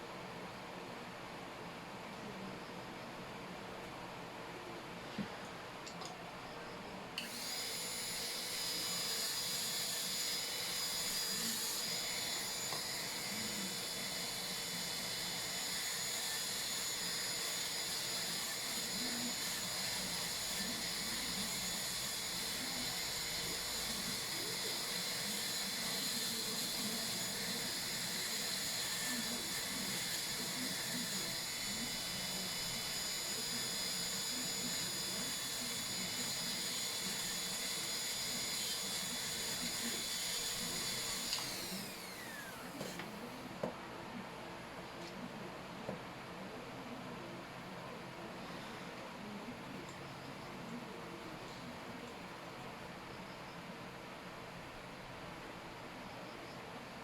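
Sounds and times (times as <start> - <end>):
dental drill whining: 7.2 - 43.5.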